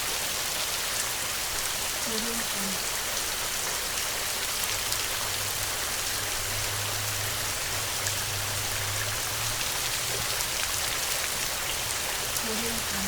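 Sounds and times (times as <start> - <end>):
heavy rain hiss: 0.0 - 13.0.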